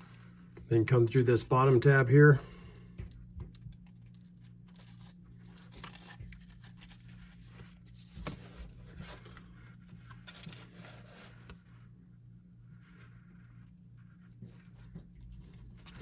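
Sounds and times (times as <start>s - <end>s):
faint low hum: 0.0s - 16.0s
strap rustling and scraping: 3.5s - 11.9s.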